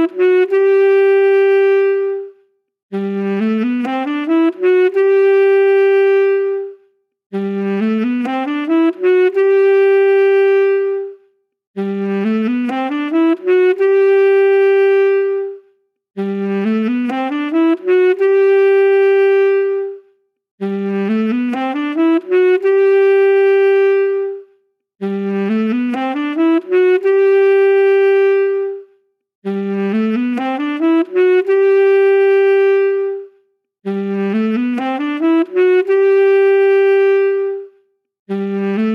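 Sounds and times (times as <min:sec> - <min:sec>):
saxophone phrase: 0:00.0 - 0:11.2, 0:11.8 - 0:38.9.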